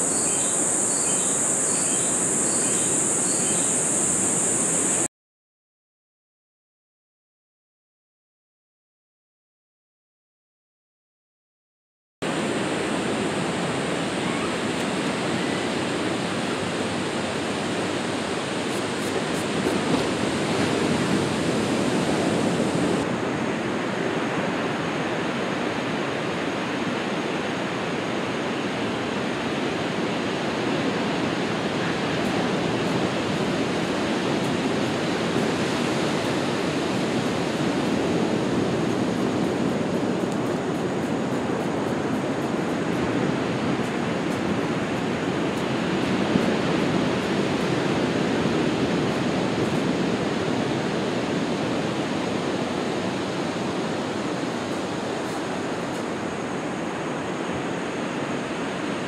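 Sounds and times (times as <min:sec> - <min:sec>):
water rushing: 0:12.3 - 0:59.0.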